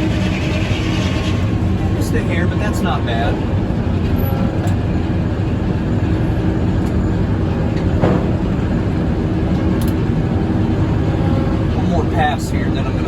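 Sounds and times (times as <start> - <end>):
saw hum: 0.0 - 3.4
sawmill mechanical rumble: 0.0 - 13.0.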